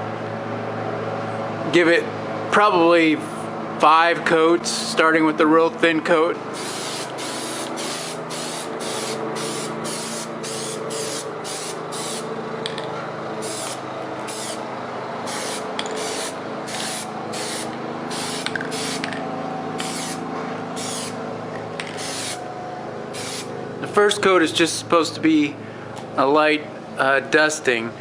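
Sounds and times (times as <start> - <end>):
aerosol spray hissing bursts: 6.6 - 12.3, 13.4 - 14.6, 15.2 - 19.0, 20.8 - 21.2, 22.0 - 22.4, 23.2 - 23.5.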